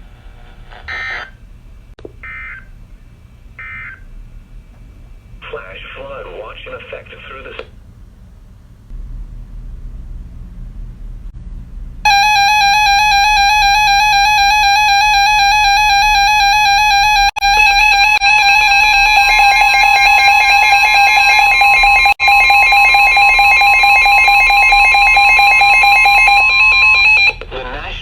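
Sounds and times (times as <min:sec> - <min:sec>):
higher electronic tone: 0:12.1 - 0:27.4.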